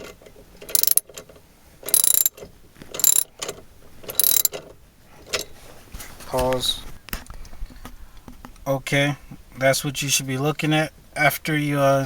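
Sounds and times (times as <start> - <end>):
socket ratchet wrench clicking: 0.7 - 1.0, 1.9 - 2.4, 3.0 - 3.3, 4.1 - 4.6.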